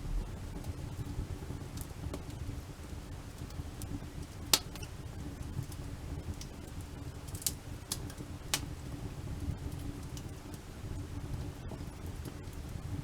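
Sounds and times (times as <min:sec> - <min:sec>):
low steady rumble: 0:00.0 - 0:01.3
campfire crackling and popping: 0:03.3 - 0:08.9.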